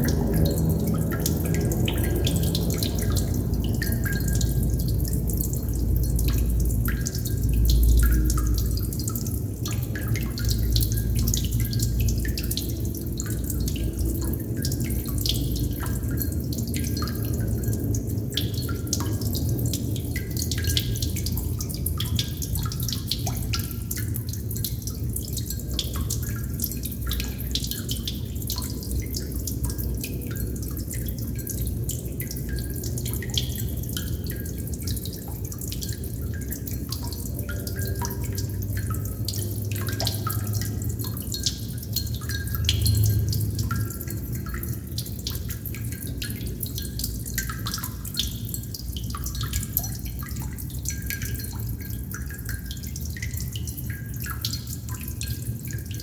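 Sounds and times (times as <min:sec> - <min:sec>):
water droplets dripping: 0:00.0 - 0:56.0.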